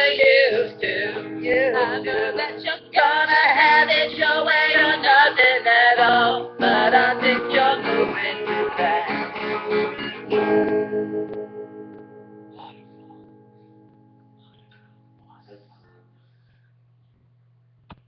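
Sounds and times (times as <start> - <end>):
person singing: 0.0 - 10.2
guitar strumming: 0.0 - 16.1.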